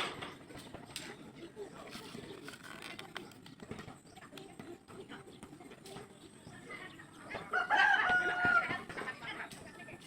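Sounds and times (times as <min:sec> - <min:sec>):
rooster crowing: 0:07.5 - 0:08.7.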